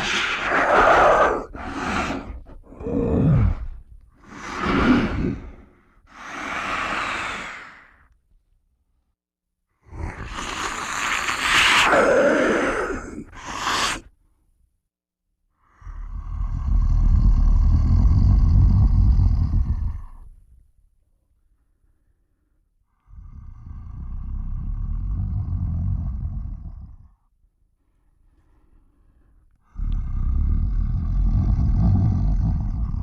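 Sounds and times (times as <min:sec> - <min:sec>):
man making monster growls: 0:00.0 - 0:05.7, 0:09.8 - 0:14.0, 0:29.7 - 0:33.0.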